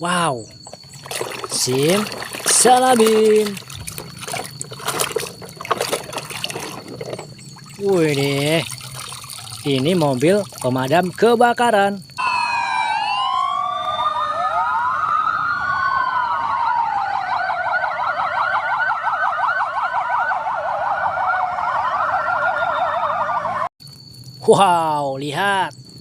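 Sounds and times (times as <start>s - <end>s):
emergency sirens wailing: 0.0s - 8.7s, 12.2s - 23.7s.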